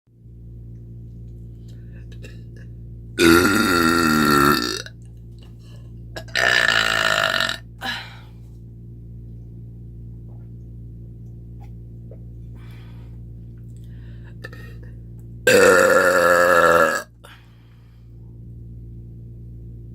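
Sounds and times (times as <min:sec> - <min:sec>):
woman burping: 0:03.2 - 0:04.9, 0:06.2 - 0:08.1, 0:15.5 - 0:17.1.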